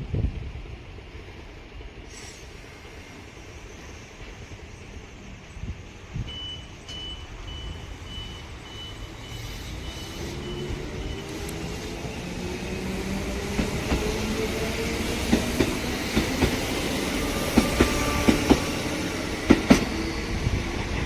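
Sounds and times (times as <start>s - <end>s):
low station rumble: 0.0s - 21.0s
high electronic warning beeps: 6.2s - 12.3s
train motor hum: 8.4s - 21.0s.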